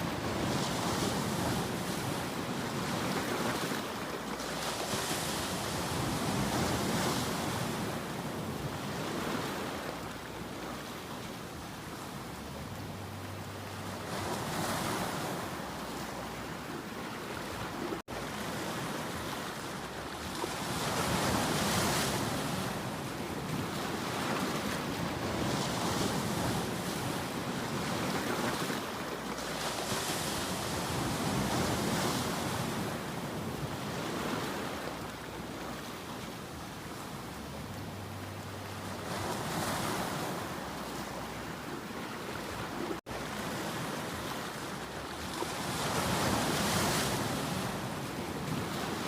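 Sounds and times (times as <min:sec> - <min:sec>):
sea waves breaking on shore: 0:00.0 - 0:49.0.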